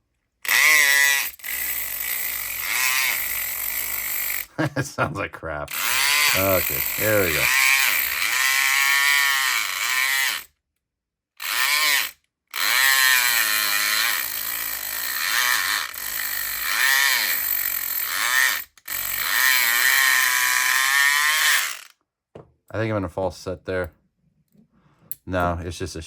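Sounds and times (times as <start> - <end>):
electric lock pick motor buzz: 0.4 - 4.5, 5.7 - 10.5, 11.4 - 21.9.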